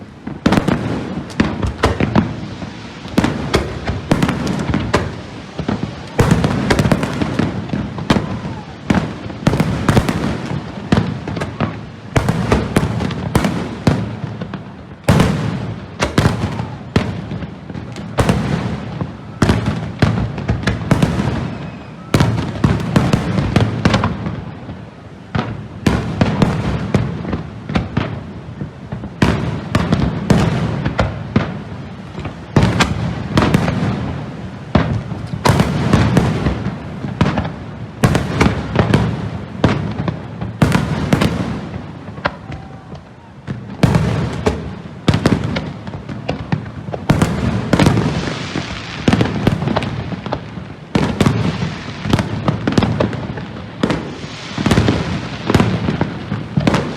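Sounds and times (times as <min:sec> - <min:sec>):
firework bursts: 0:00.0 - 0:56.9
fireworks rumble and crackle: 0:00.0 - 0:56.9.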